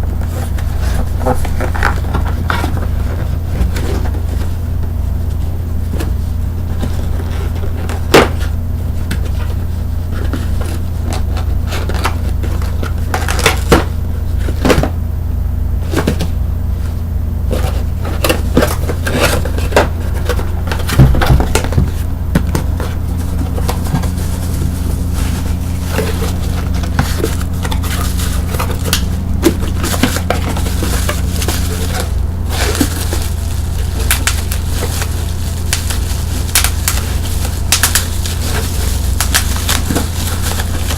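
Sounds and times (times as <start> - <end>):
steady low hum: 0.0 - 40.9
bubble wrap popping: 18.2 - 40.9.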